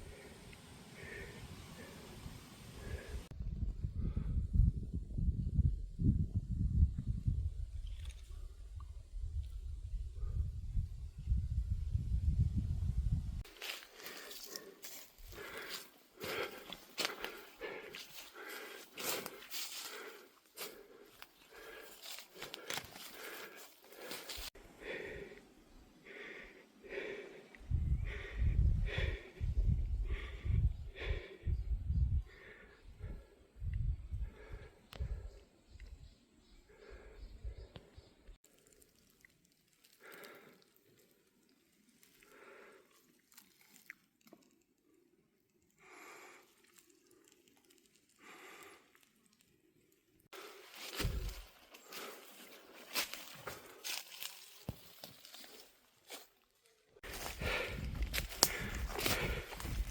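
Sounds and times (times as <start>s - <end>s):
person breathing hard: 0.0s - 4.7s, 13.4s - 35.5s, 36.6s - 38.0s, 39.8s - 40.8s, 42.2s - 42.9s, 45.8s - 47.4s, 48.2s - 49.0s, 50.3s - 54.4s, 57.0s - 59.9s
small clicks and rustles: 46.4s - 50.3s.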